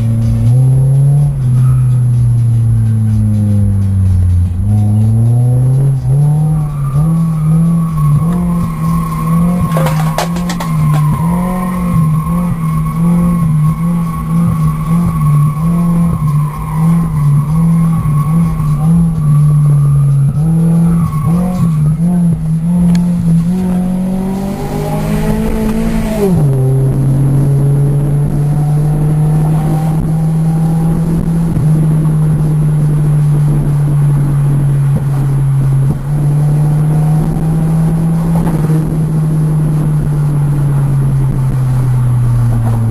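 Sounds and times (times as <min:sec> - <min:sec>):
car engine revving: 0:00.0 - 0:42.9
tyres squealing: 0:06.7 - 0:11.8.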